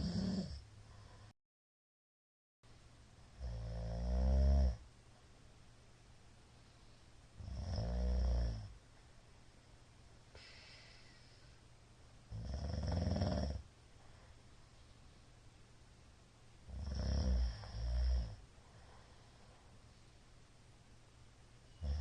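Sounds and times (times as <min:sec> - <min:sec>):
man snoring loudly: 0:00.0 - 0:00.6, 0:03.4 - 0:04.8, 0:07.4 - 0:08.7, 0:12.3 - 0:13.6, 0:16.7 - 0:18.4, 0:21.8 - 0:22.0.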